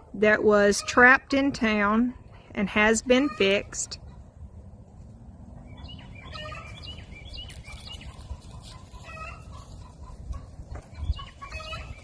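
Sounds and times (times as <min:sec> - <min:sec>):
chickens clucking: 0:00.7 - 0:04.6, 0:05.5 - 0:12.0.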